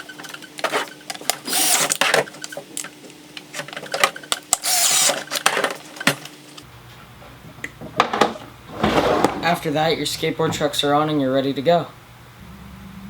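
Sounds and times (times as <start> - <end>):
power drill running in bursts: 1.4 - 2.0, 4.6 - 5.2.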